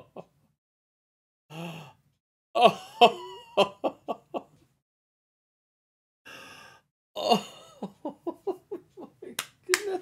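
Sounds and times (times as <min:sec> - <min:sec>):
man laughing: 0:02.6 - 0:04.6, 0:07.2 - 0:10.0.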